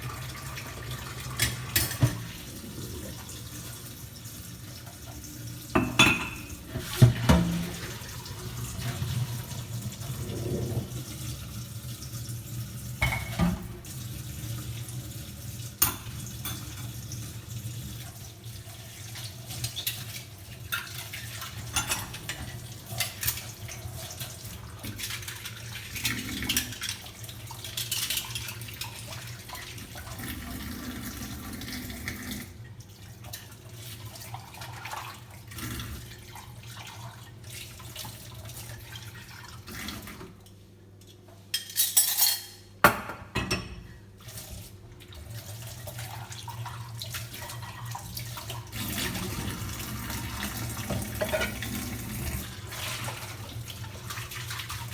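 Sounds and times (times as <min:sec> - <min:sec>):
tap running into sink: 0:01.4 - 0:02.4, 0:05.8 - 0:08.0
crockery clinking: 0:05.8 - 0:06.6, 0:41.6 - 0:42.7.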